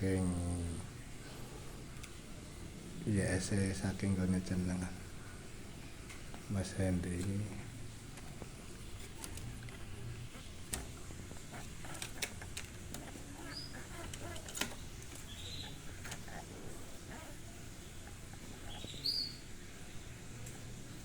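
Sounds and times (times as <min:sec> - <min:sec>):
canaries chirping: 0:09.8 - 0:20.1.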